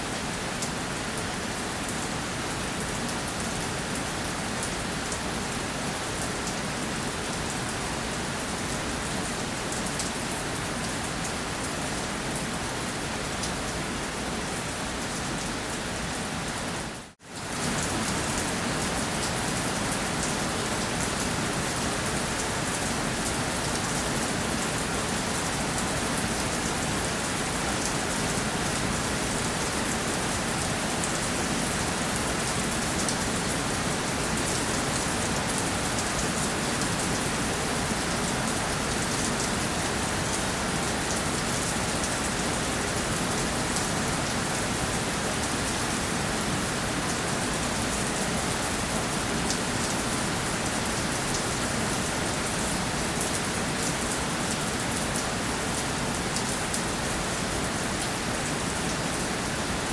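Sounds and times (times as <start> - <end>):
steady rainfall: 0.0 - 59.9.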